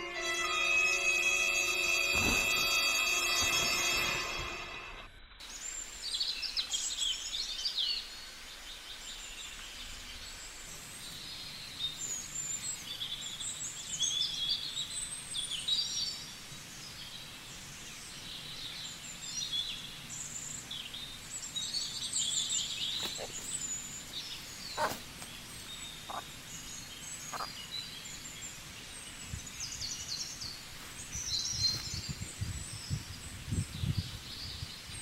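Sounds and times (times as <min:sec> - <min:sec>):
background music: 0:00.0 - 0:05.1
outdoor ambience: 0:00.0 - 0:35.0
birds chirping: 0:09.5 - 0:35.0.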